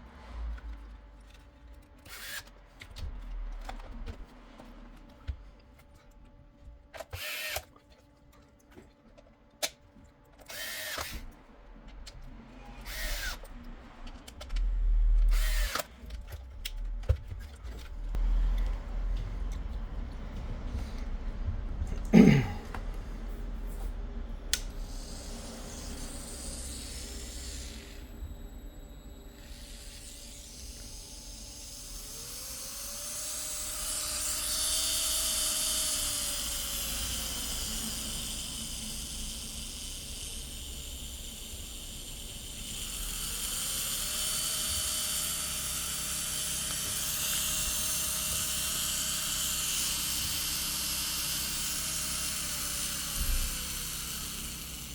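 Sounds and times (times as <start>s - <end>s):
small electric motor whining: 2.0s - 4.2s, 7.0s - 7.7s, 10.4s - 16.0s, 24.5s - 54.9s.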